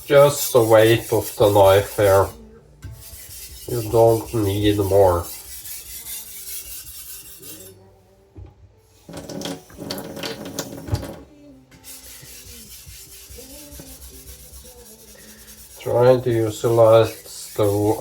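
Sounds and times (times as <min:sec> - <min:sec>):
knife scraping on whetstone: 0:00.0 - 0:07.8, 0:11.7 - 0:18.0.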